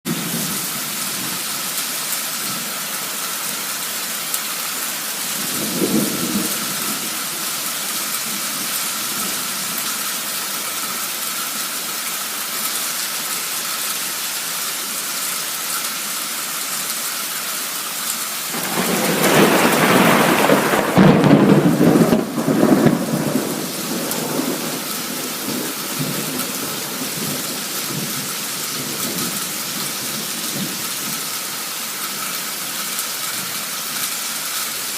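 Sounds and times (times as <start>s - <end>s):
heavy rain hissing: 0.1s - 34.9s
rolling thunder: 5.4s - 7.2s, 18.5s - 30.9s.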